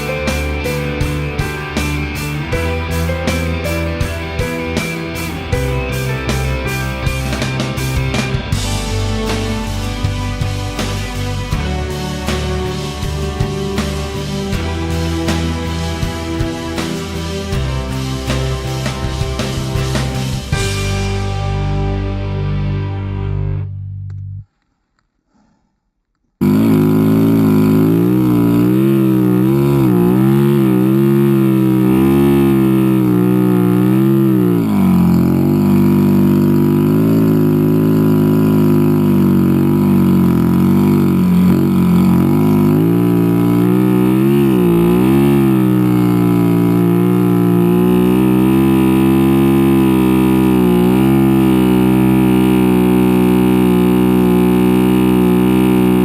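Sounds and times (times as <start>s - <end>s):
vehicle engine revving: 0.0s - 24.4s, 26.4s - 56.0s.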